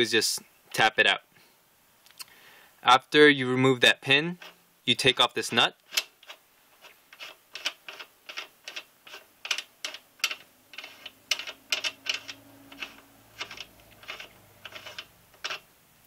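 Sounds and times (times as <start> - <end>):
ratchet wrench clicking: 9.4 - 15.6.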